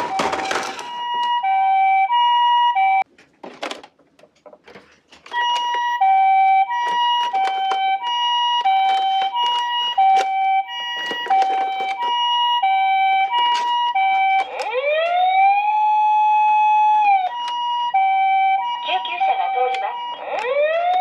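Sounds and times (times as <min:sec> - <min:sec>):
toy electronic siren: 0:00.0 - 0:03.0, 0:05.3 - 0:21.0
clicks and knocks: 0:06.8 - 0:08.0, 0:08.6 - 0:12.2.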